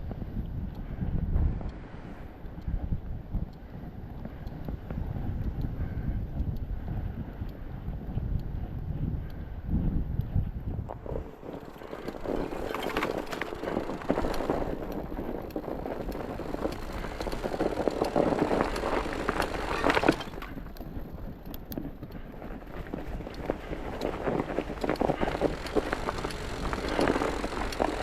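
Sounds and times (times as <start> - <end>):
wind on microphone: 0.0 - 28.0
chained tyres crunching over snow: 10.8 - 28.0.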